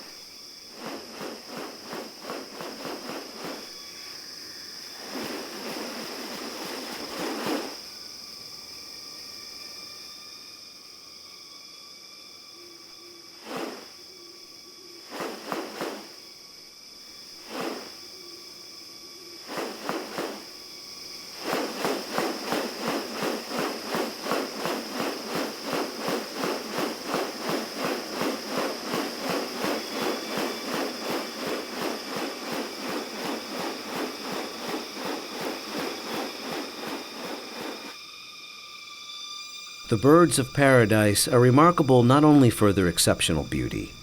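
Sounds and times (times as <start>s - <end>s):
pulsing insect buzz: 0.0s - 40.8s
high-pitched insect drone: 0.0s - 41.9s
short insect buzzes: 11.7s - 18.7s, 19.4s - 40.2s.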